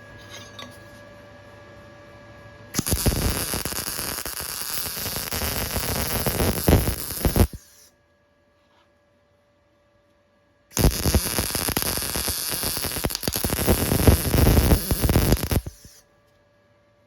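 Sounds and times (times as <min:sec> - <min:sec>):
arc welding crackling hiss: 0:02.8 - 0:07.9, 0:10.7 - 0:16.0.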